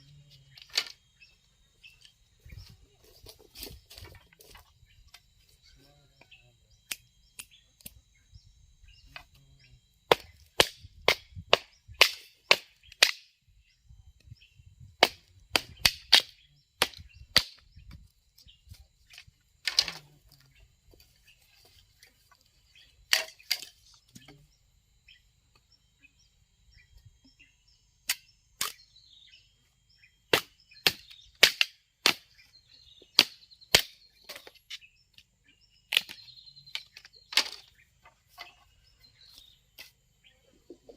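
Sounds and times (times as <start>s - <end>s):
hard tool strikes: 30.3s - 32.3s.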